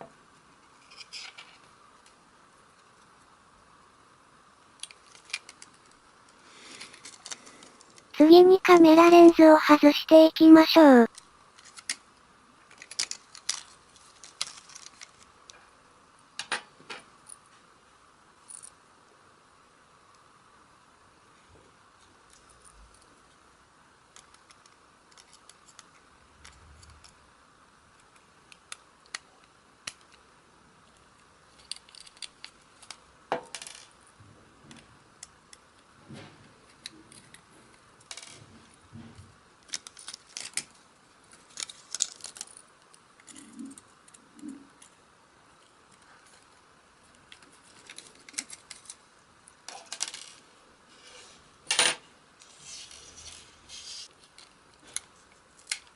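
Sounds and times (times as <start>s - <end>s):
small parts clicking and clinking: 4.8s - 6.0s, 6.7s - 8.1s, 12.7s - 15.3s, 24.1s - 27.2s, 30.9s - 34.0s, 36.7s - 38.4s, 39.6s - 44.2s, 45.6s - 50.5s, 54.2s - 55.9s.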